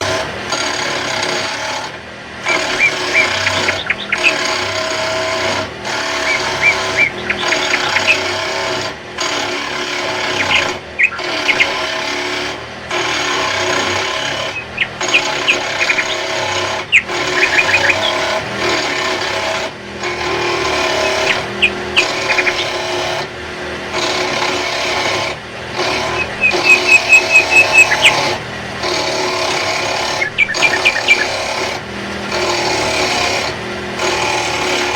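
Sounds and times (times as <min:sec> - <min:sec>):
tool scraping wood: 0:00.0 - 0:34.9
sharp ticks: 0:02.4 - 0:23.3, 0:25.9 - 0:28.4, 0:29.6 - 0:31.7.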